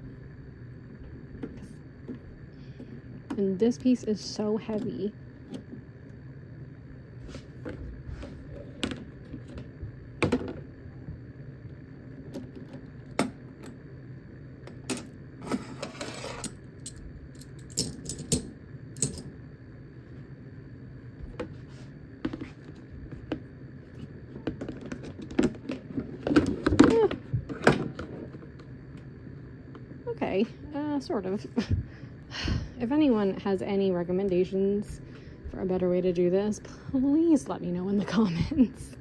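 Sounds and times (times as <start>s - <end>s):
metal parts clinking and knocking: 16.1s - 19.3s.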